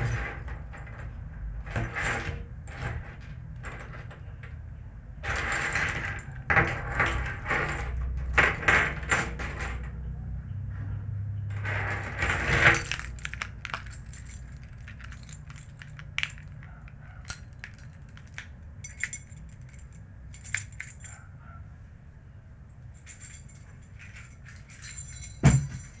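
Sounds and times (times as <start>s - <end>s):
metal keys jangling: 5.2s - 10.2s, 11.4s - 21.6s, 22.9s - 26.0s.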